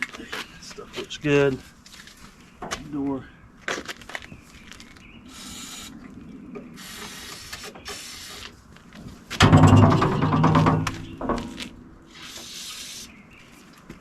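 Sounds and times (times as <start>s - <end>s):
rattling buzz: 9.4s - 12.0s
metal door scraping: 9.4s - 12.2s.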